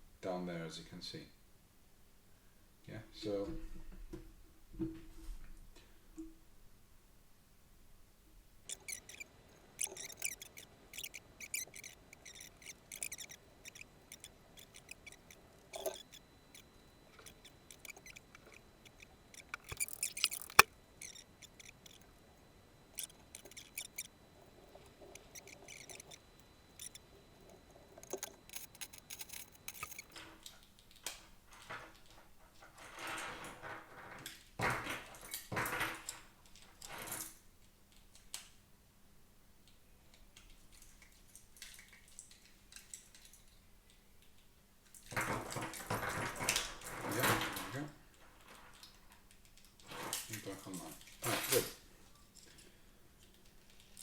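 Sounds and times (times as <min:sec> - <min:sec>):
rustling: 0:08.6 - 0:30.2
small plastic parts clicking: 0:08.7 - 0:22.2, 0:22.9 - 0:30.2.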